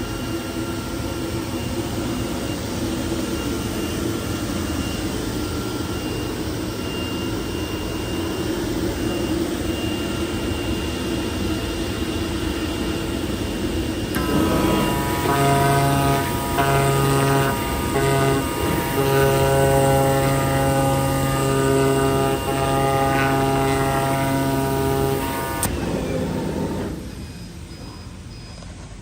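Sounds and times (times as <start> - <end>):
faint high whine: 0.0 - 29.0
cutting machine running: 14.0 - 27.4.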